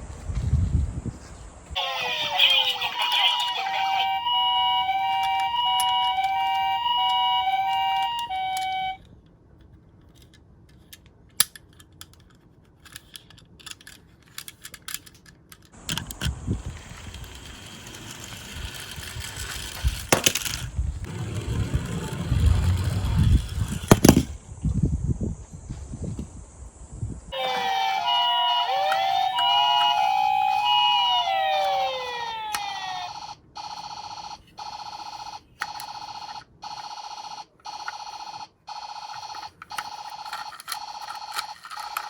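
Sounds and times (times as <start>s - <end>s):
toy ambulance two-tone siren: 1.8s - 9.0s, 27.3s - 42.0s
plastic toys clicking: 4.8s - 9.0s, 9.6s - 20.7s, 35.4s - 36.9s, 39.0s - 42.0s
rattling whirring noise with knocks: 15.8s - 24.4s.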